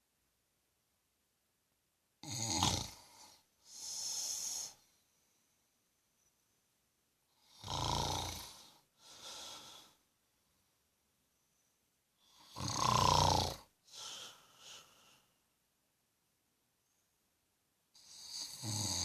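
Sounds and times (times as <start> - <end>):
man snoring: 2.2 - 4.8, 7.4 - 10.0, 12.3 - 14.9, 18.0 - 19.0
soft breath out: 3.1 - 5.5, 8.5 - 10.6, 13.8 - 15.4.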